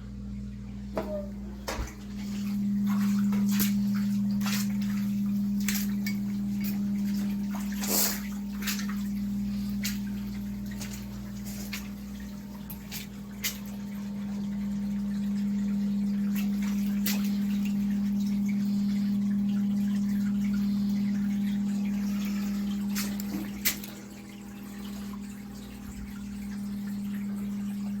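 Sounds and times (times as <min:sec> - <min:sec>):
water dripping: 0:00.3 - 0:28.0
electric motor hum: 0:00.8 - 0:08.0.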